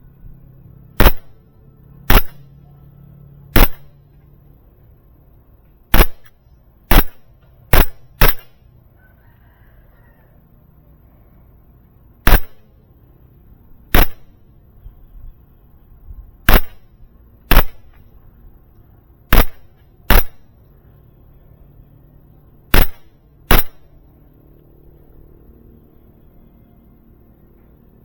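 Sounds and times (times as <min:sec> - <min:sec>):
airsoft pistol shots: 0:01.0 - 0:01.4, 0:02.1 - 0:02.5, 0:03.5 - 0:04.0, 0:05.9 - 0:08.6, 0:12.2 - 0:12.7, 0:13.9 - 0:14.4, 0:16.4 - 0:16.9, 0:17.5 - 0:18.0, 0:19.3 - 0:20.5, 0:22.7 - 0:23.9.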